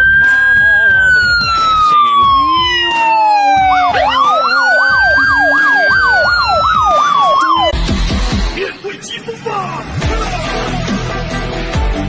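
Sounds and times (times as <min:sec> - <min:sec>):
siren wailing: 0:00.0 - 0:07.8
siren yelping: 0:00.0 - 0:07.8.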